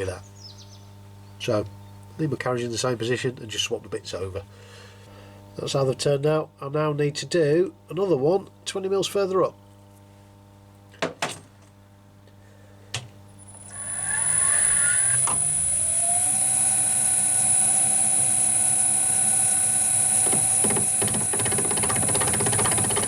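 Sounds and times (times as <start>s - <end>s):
metal lathe motor whine: 13.4s - 23.0s.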